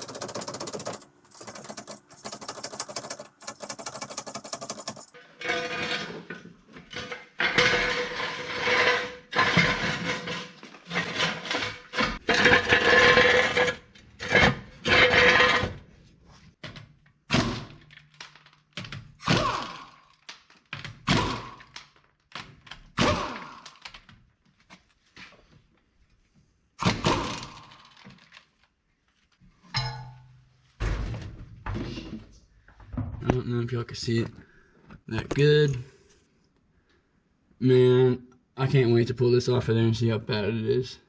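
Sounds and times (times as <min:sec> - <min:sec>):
sharp metal clanks: 0:29.7 - 0:30.4.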